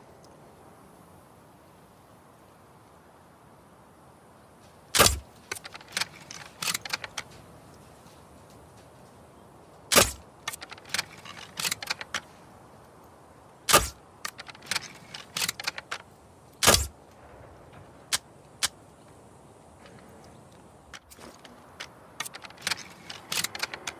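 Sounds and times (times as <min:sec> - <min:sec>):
mechanical clicks and clatter: 0:05.0 - 0:08.6, 0:09.9 - 0:12.3, 0:13.7 - 0:16.9, 0:20.9 - 0:23.9.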